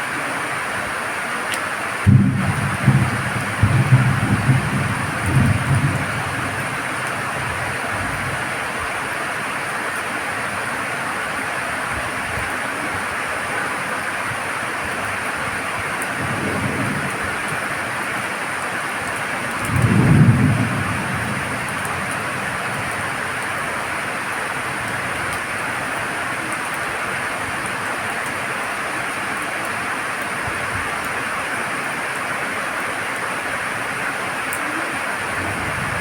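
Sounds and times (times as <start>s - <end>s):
rain hissing: 0.0s - 36.0s
thunder rumbling: 2.0s - 8.9s, 16.1s - 18.0s, 19.5s - 23.8s, 35.3s - 36.0s.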